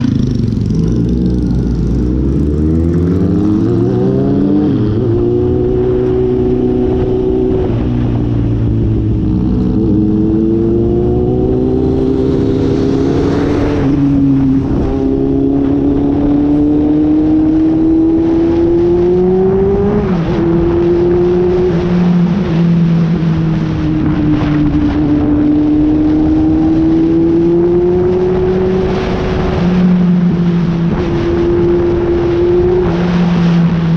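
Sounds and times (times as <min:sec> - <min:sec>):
motorcycle engine revving through gears: 0:00.0 - 0:33.9
wind noise on microphone: 0:00.0 - 0:33.9.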